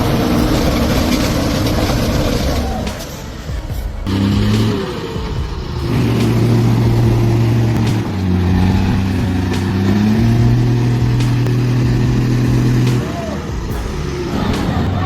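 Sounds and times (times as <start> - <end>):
heavy truck engine under load: 0.0 - 15.0.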